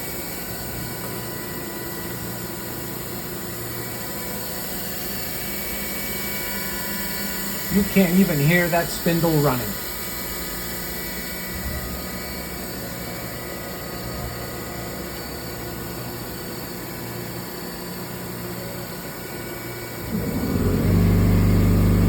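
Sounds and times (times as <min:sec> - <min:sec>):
air compressor droning: 0:07.0 - 0:10.2, 0:19.9 - 0:22.0
machine spindle humming: 0:20.0 - 0:22.0.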